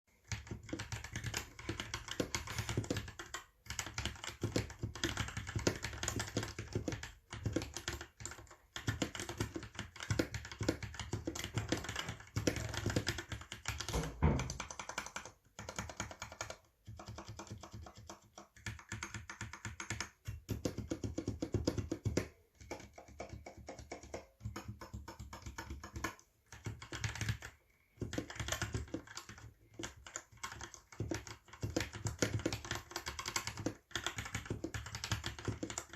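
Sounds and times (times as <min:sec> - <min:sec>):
mechanical keyboard typing: 0:00.2 - 0:35.9
deep thump: 0:14.0 - 0:14.5.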